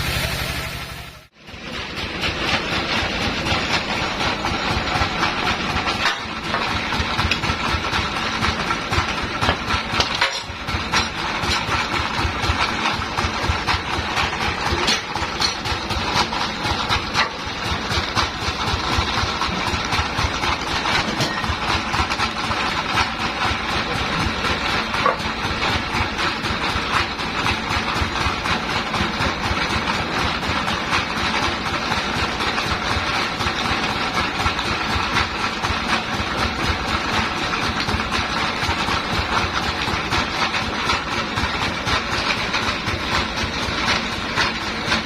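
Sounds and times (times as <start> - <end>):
sawmill machinery running: 0.0 - 45.0.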